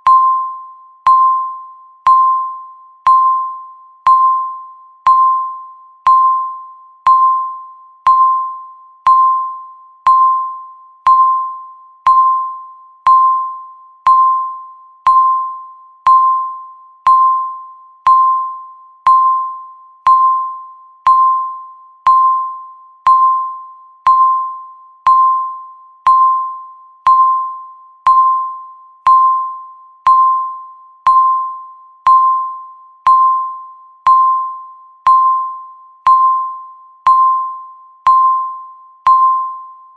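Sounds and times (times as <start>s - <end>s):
countdown timer beeps: 0.0s - 39.9s.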